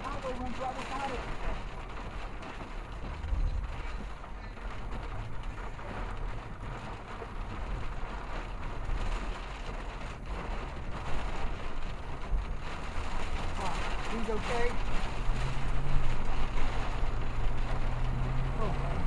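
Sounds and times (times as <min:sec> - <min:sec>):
rain: 0:00.0 - 0:19.0
vehicle noise: 0:00.0 - 0:19.0
wind: 0:00.0 - 0:19.0.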